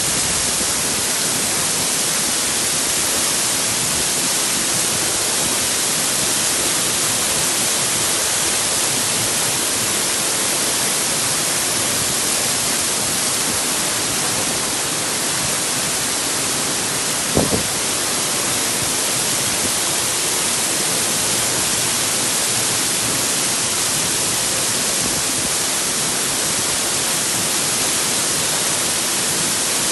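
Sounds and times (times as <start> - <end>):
waterfall rushing: 0.0 - 29.9
short knock: 17.4 - 17.7.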